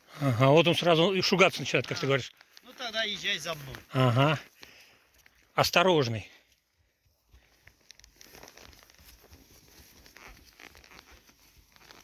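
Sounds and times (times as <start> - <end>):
horse walking: 0.8 - 5.5, 6.5 - 12.0
faint rustling: 7.1 - 12.0
horse tack clicking: 7.3 - 12.0.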